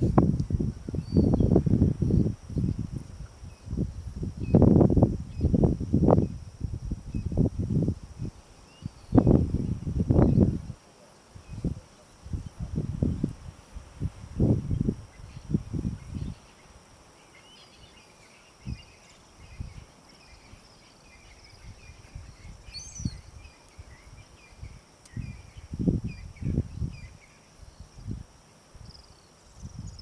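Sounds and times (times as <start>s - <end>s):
high insect drone: 0.0s - 30.0s
small birds chirping: 15.1s - 28.1s.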